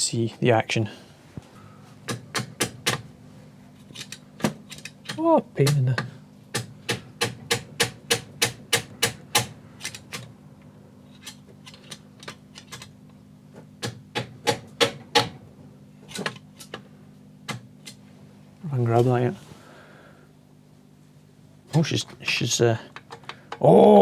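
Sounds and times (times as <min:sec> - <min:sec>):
small hammer tapping metal: 0:05.0 - 0:10.0.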